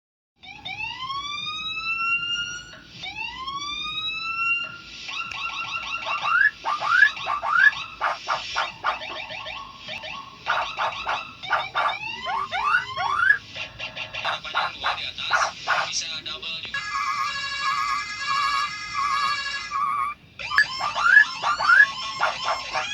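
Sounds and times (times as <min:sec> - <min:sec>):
bird mimicking siren whoops: 0:00.4 - 0:13.4, 0:14.2 - 0:16.0, 0:16.8 - 0:22.9
bird yelps and chirps: 0:04.6 - 0:16.0, 0:16.8 - 0:22.9.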